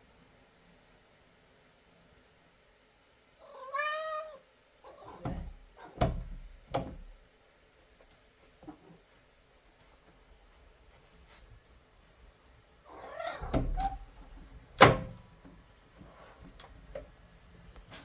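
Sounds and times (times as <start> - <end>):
door rattling and creaking: 5.2 - 7.1, 13.2 - 15.4.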